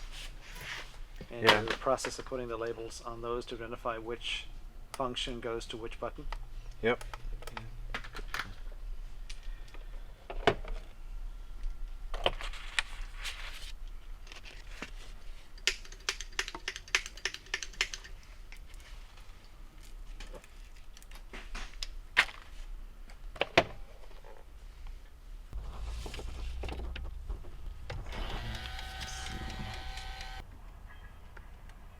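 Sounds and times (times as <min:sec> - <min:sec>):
steady low hum: 0:25.6 - 0:30.4
sharp clicks: 0:28.2 - 0:30.4.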